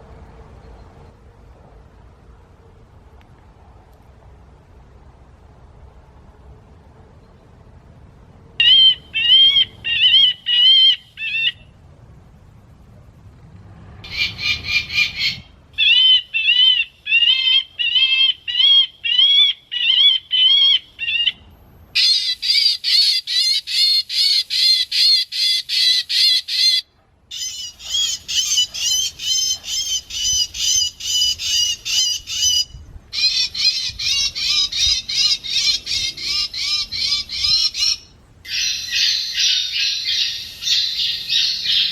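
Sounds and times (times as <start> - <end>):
shrill harsh bird calls: 8.6 - 11.7, 14.0 - 41.9.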